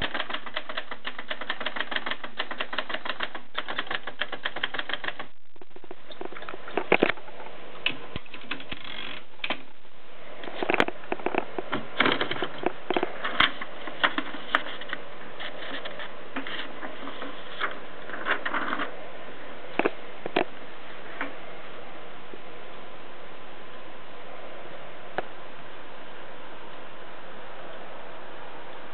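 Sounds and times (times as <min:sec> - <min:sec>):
typewriter keys clacking: 0:00.0 - 0:05.3.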